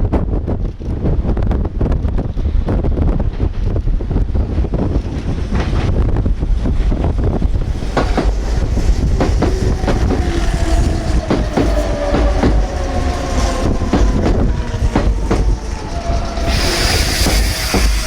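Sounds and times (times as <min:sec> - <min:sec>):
wind rumbling on microphone: 0:00.0 - 0:18.0
train wheels clacking over rail joints: 0:04.8 - 0:18.0
electric train whine: 0:05.1 - 0:18.0
hiss: 0:16.4 - 0:18.0.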